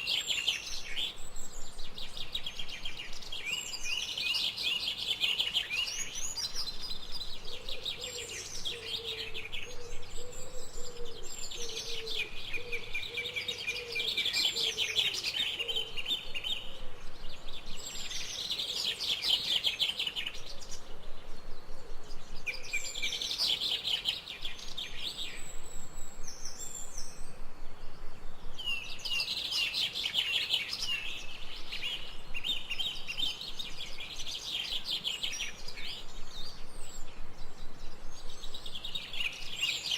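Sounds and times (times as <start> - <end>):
birds chirping and trilling: 0.0 - 39.9.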